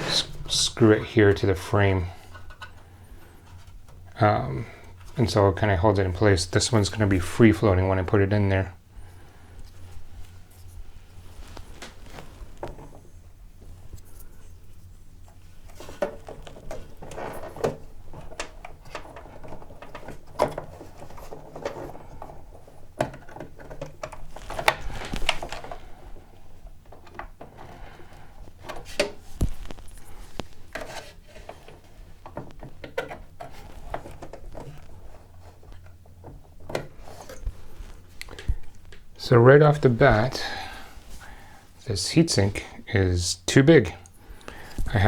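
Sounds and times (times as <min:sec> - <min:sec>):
plastic and metal rubbing: 0:00.0 - 0:08.6, 0:09.7 - 0:41.3
clicks and knocks of parts: 0:26.8 - 0:35.0.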